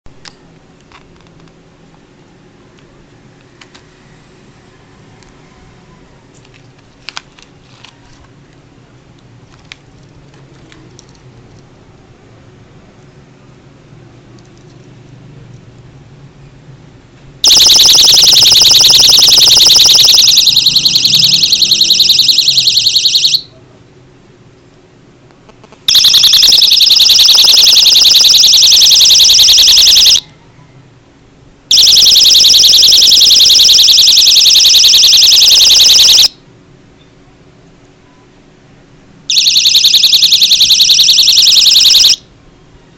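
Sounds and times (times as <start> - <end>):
pulsing high-pitched alarm siren: 17.4 - 23.5, 25.9 - 30.2, 31.7 - 36.4, 39.3 - 42.2.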